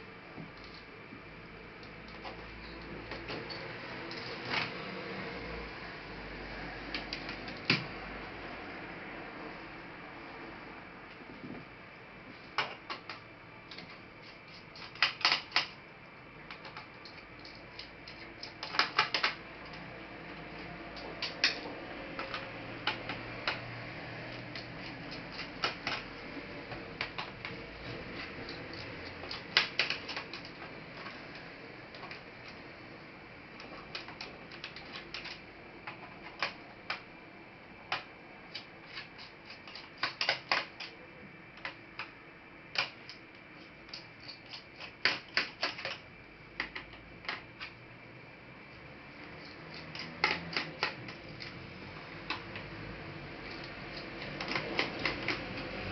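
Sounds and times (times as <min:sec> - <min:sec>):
plastic laptop parts clicking: 0:12.6 - 0:15.8, 0:16.4 - 0:19.8, 0:20.6 - 0:32.6, 0:33.6 - 0:37.1, 0:37.9 - 0:41.0, 0:42.7 - 0:46.0, 0:46.6 - 0:47.8, 0:49.3 - 0:52.8, 0:53.4 - 0:55.9.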